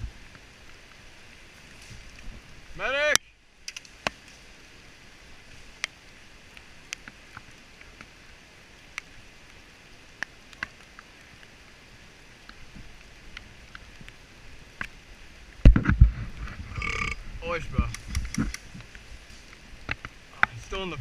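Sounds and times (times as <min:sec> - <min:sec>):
low hiss: 0:00.0 - 0:21.0
thump on microphone: 0:15.6 - 0:16.3.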